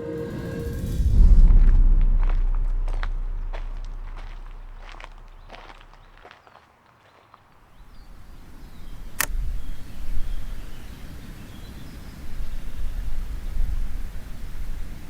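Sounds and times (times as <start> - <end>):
low rumbling noise: 0.0 - 6.3, 7.8 - 15.0
faint bird chirps: 4.2 - 13.7
sharp click: 9.2 - 9.4.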